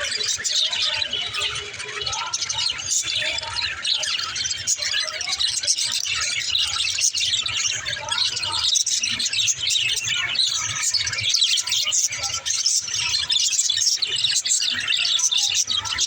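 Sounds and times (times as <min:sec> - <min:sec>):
budgerigars chirping and warbling: 0:00.0 - 0:16.0.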